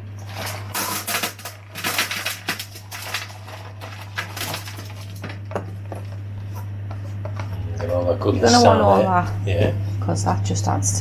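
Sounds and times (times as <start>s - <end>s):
steady low hum: 0.0s - 11.0s
frozen pieces clattering on tray: 0.2s - 6.1s.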